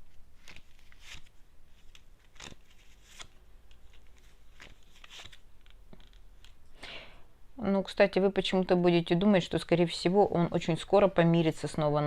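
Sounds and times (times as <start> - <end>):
cards being shuffled: 0.1 - 6.6.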